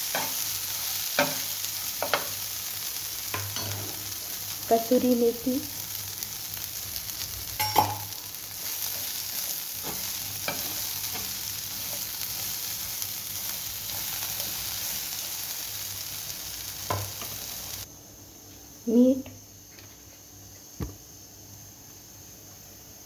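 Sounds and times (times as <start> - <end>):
spices sizzling in hot oil: 0.0 - 17.9
spatula clinking against pan: 7.6 - 8.2.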